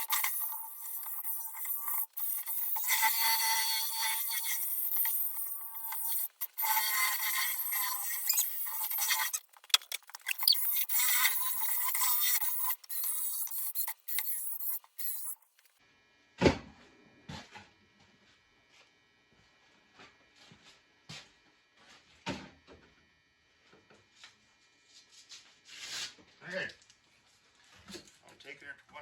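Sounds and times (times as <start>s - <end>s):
orbital sander on metal: 0.0s - 9.4s.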